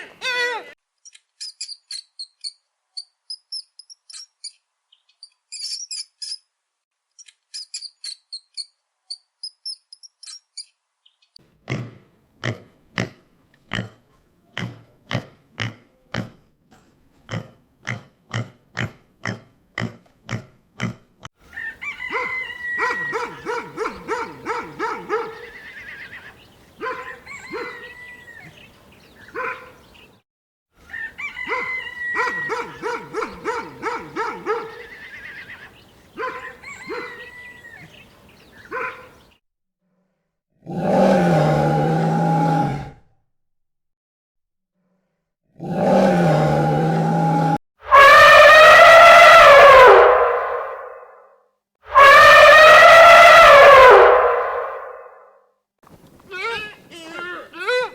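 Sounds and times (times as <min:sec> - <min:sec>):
mixed animal calls: 0:21.5 - 0:29.9, 0:30.8 - 0:38.0, 0:45.7 - 0:51.2, 0:51.9 - 0:55.2.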